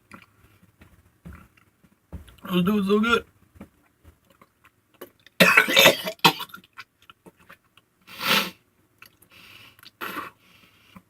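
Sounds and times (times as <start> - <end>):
man retching: 5.4 - 6.6.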